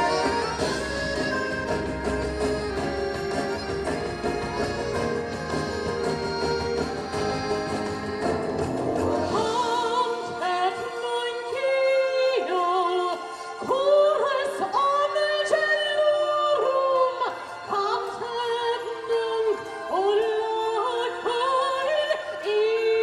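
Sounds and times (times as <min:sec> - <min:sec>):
orchestral accompaniment: 0:00.0 - 0:15.0.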